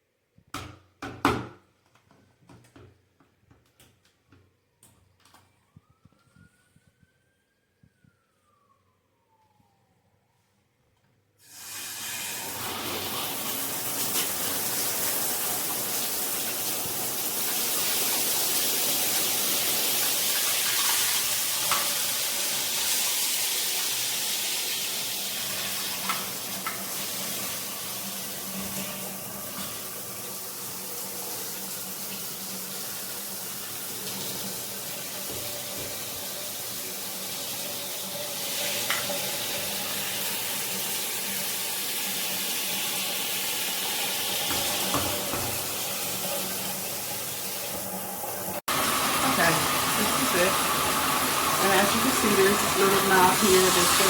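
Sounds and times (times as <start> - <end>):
shower water spraying: 11.4 - 54.0.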